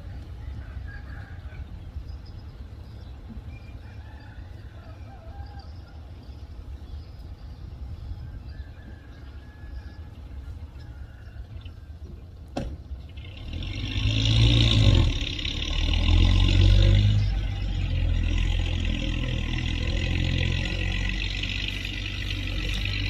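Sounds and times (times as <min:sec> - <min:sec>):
heavy diesel engine revving: 0:13.1 - 0:23.0.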